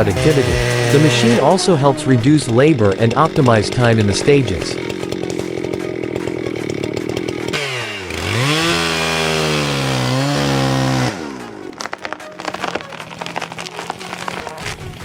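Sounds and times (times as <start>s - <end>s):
chainsaw revving and cutting: 0.0s - 15.0s
irregular clicks and cracks: 10.3s - 15.0s.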